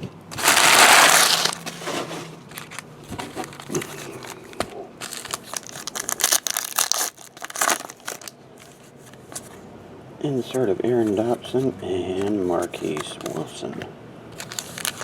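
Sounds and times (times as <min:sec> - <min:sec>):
plastic wrapper crinkling: 0:00.3 - 0:08.8, 0:14.4 - 0:15.0.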